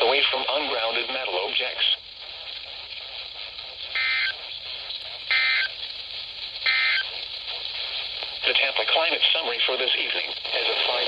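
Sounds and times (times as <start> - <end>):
radio static hiss: 0.0 - 11.0
warbling data bursts: 0.0 - 11.0.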